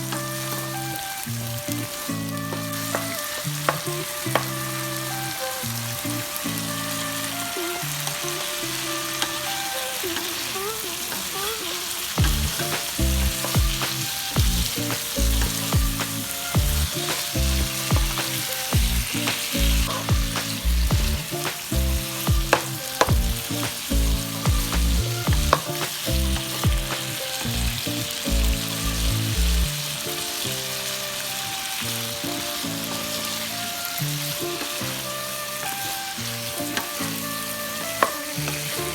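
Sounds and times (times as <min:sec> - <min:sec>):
background music with bass: 0:00.0 - 0:09.7, 0:12.2 - 0:38.9
food sizzling in a wok: 0:00.0 - 0:38.9
spatula scraping a pan: 0:12.3 - 0:29.1.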